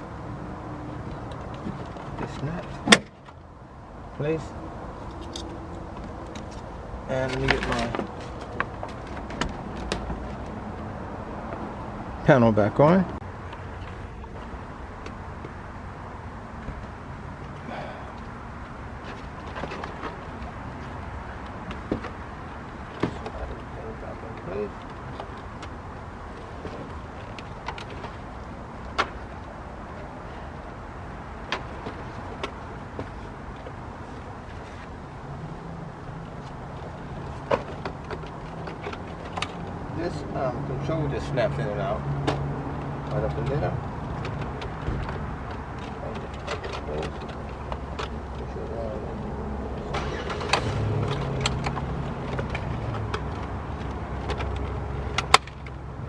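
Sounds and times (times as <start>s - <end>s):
steady background noise: 0.0s - 56.0s.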